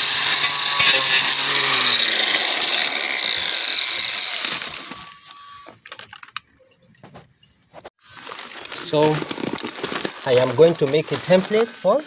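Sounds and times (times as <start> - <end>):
power grinder whining on metal: 0.0 - 5.8, 10.4 - 12.0.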